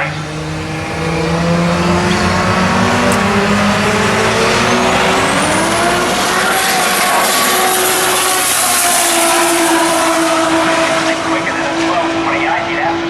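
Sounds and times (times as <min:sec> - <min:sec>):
race car engine at full throttle: 0:00.0 - 0:13.0.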